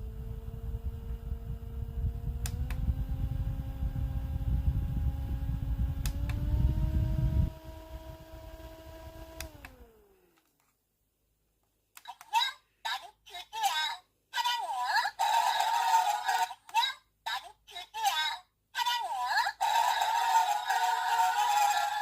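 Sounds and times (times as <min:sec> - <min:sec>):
electric fan motor humming: 0:00.0 - 0:10.4, 0:15.1 - 0:16.5, 0:19.5 - 0:22.0
air rumble on microphone: 0:00.2 - 0:08.2
fan button click: 0:02.4 - 0:02.9, 0:06.0 - 0:06.5.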